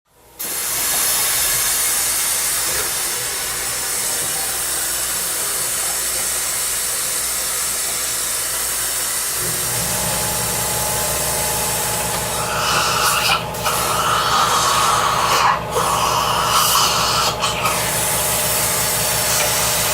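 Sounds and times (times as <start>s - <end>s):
dental suction hissing: 0.4s - 19.9s
low buzzing hum: 9.4s - 19.9s.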